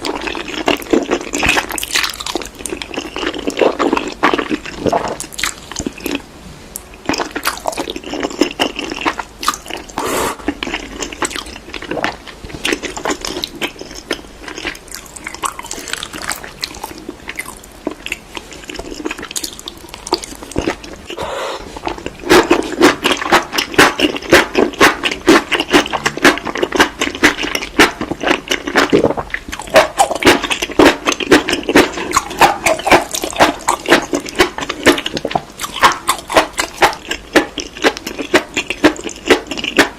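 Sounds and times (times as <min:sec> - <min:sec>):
wet chewing and crunching: 0:00.0 - 0:39.9
smacking mouth sounds: 0:17.9 - 0:39.9.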